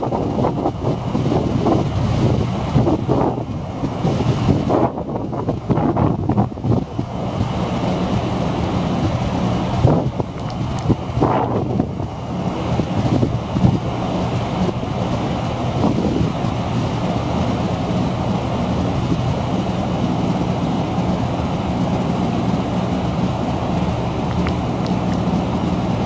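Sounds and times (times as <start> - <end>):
low engine drone: 0.0 - 26.0.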